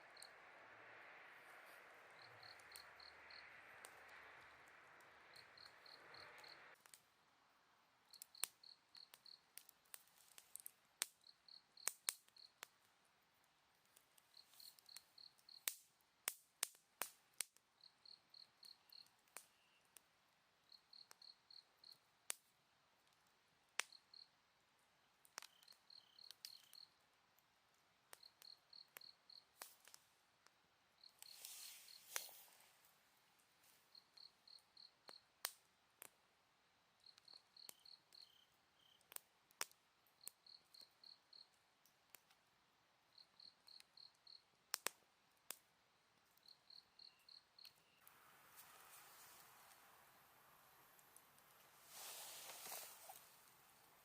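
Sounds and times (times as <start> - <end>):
insect chirping: 0.0 - 6.8, 17.8 - 19.8, 25.5 - 27.0, 31.0 - 32.6, 37.0 - 39.0, 43.1 - 44.4, 46.4 - 54.0
steady hiss: 0.0 - 6.8, 31.2 - 33.0, 48.1 - 54.0
campfire crackling and popping: 0.0 - 36.2, 37.0 - 42.5, 43.2 - 54.0.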